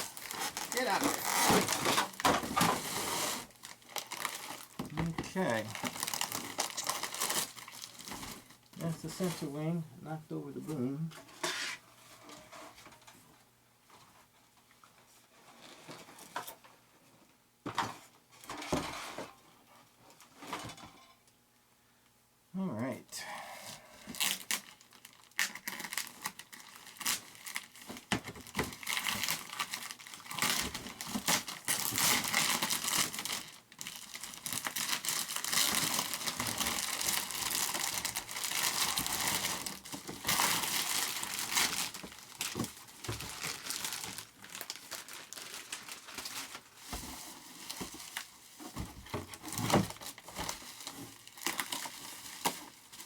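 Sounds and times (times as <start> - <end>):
packaging crinkling and tearing: 0.0 - 9.4, 24.0 - 53.0.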